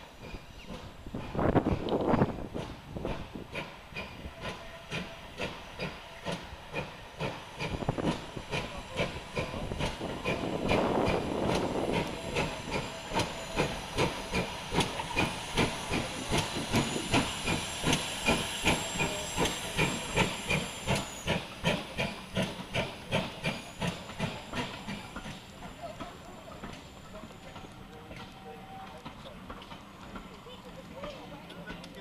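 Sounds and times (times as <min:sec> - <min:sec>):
steam hissing: 0:00.0 - 0:31.8
steam locomotive chuffing: 0:00.0 - 0:32.0.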